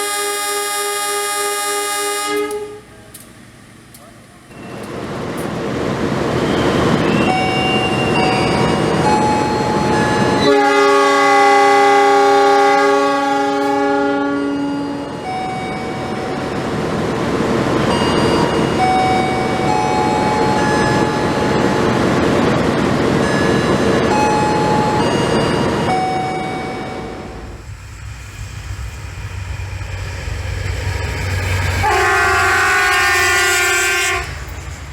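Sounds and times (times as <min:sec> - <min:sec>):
locomotive horn blast: 0:00.0 - 0:03.2, 0:10.3 - 0:16.4, 0:31.8 - 0:34.5
train rumbling: 0:00.0 - 0:34.9.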